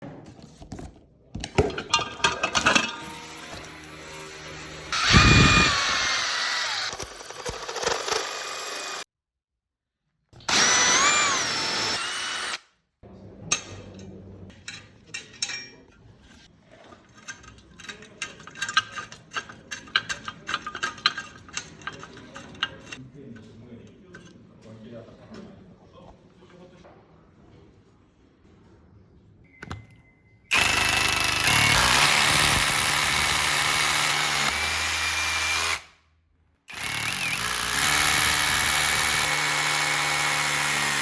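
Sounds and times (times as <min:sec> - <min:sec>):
power drill whining: 0:02.9 - 0:09.1, 0:10.5 - 0:12.6, 0:30.5 - 0:35.9, 0:36.7 - 0:41.0
small clicks and scrapes: 0:14.6 - 0:24.4.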